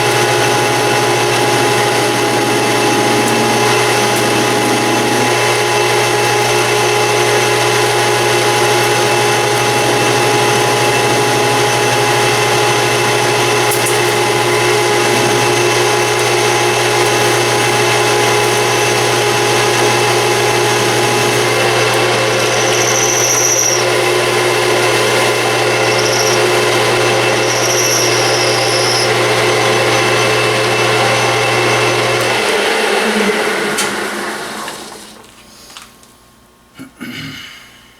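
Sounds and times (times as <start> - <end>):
metal lathe humming: 0.0 - 35.3
short high squeaks: 22.4 - 23.9, 25.8 - 29.2.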